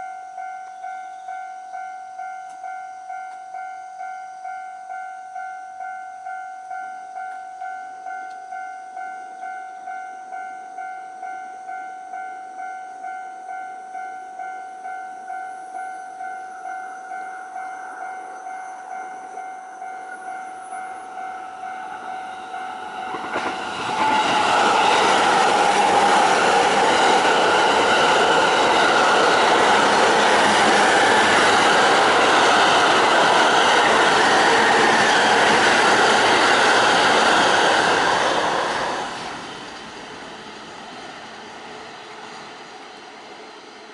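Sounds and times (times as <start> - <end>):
level-crossing warning bell: 0.0 - 39.0
electric train passing: 11.7 - 43.9.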